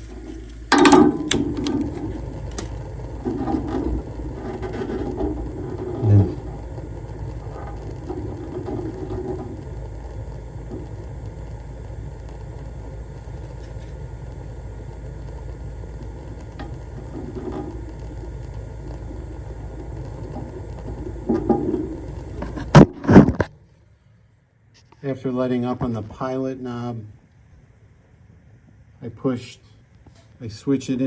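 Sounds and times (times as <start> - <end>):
gas pilot flame rumbling: 0.0 - 23.5.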